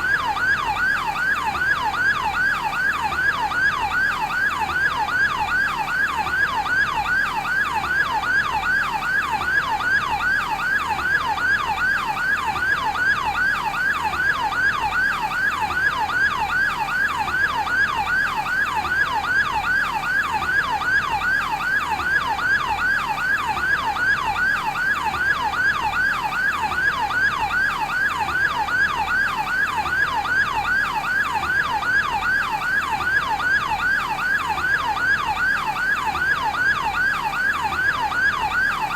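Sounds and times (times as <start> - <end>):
ambulance yelp siren: 0.0 - 38.9.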